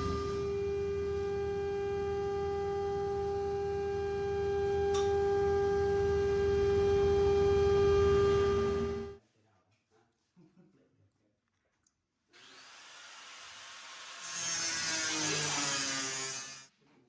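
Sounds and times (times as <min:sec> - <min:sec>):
router spindle whining: 0:12.4 - 0:16.7.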